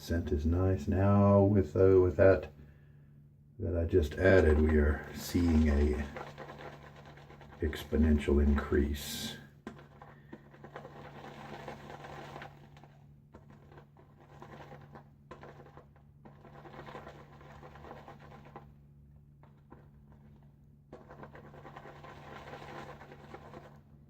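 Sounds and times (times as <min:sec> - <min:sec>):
steady low hum: 0:00.0 - 0:24.0
shaving brush swishing lather: 0:04.0 - 0:18.7, 0:19.4 - 0:23.8.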